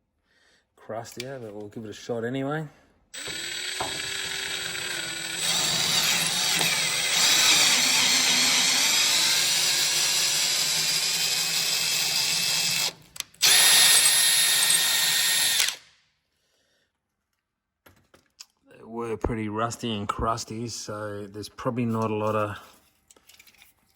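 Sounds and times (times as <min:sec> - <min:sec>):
power drill whining: 0:03.2 - 0:15.9.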